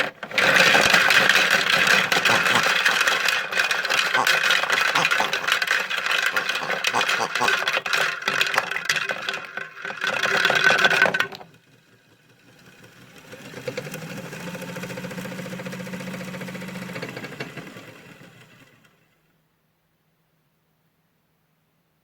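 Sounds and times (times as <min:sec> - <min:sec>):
acorns clattering in a drum: 0:00.0 - 0:11.5.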